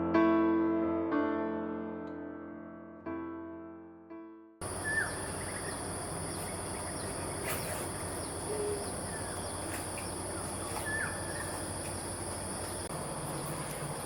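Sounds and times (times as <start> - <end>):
high-pitched insect drone: 4.6 - 13.2
falling bird chirp: 4.6 - 14.0.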